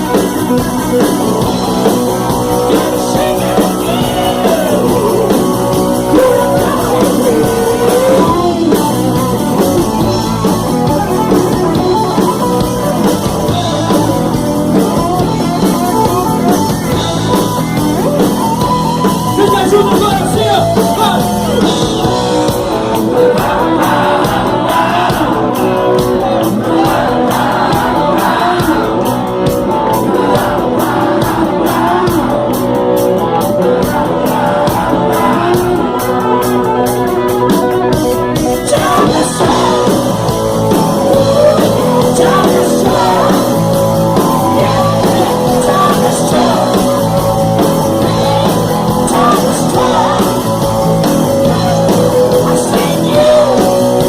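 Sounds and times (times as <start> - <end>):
rock band playing: 0.0 - 54.0
person shouting lead vocal: 2.6 - 8.9, 19.2 - 21.7, 51.2 - 54.0.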